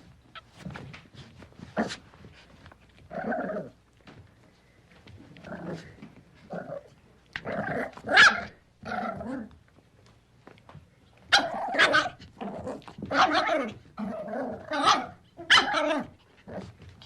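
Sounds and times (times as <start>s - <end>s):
puppy barking and yapping: 7.7s - 9.2s, 11.3s - 16.3s.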